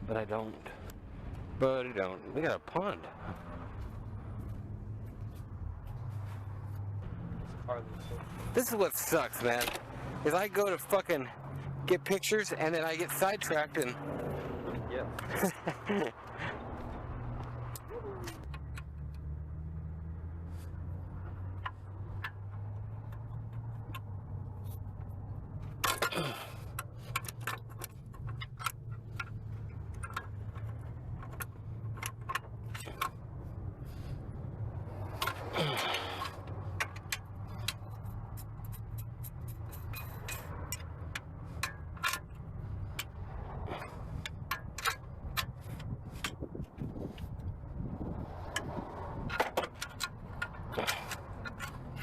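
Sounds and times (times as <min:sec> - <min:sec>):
tools and metal parts clinking: 0:20.5 - 0:47.6, 0:48.4 - 0:52.0.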